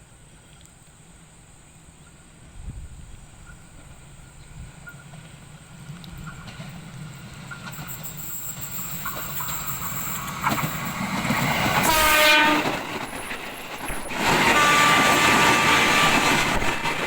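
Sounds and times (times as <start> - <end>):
steady train whine: 1.2 - 17.0
train wheels on rails: 2.0 - 17.0
train horn blast: 11.6 - 12.9, 14.2 - 16.7.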